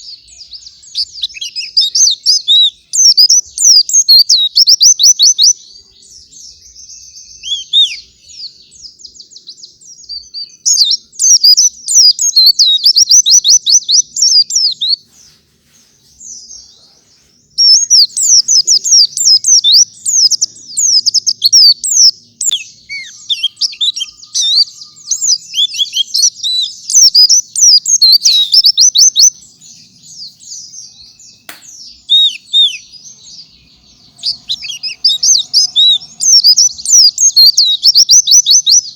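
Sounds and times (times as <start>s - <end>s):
bird twittering song: 0.0s - 38.9s.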